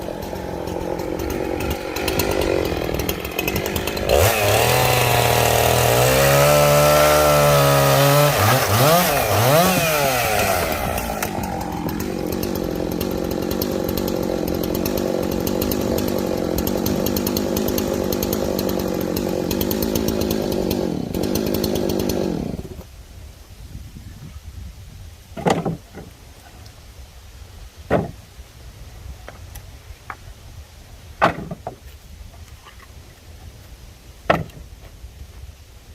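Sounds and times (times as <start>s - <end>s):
chainsaw cutting wood: 0.0s - 22.9s, 25.4s - 26.1s, 27.9s - 28.2s, 31.2s - 31.8s, 34.3s - 34.8s.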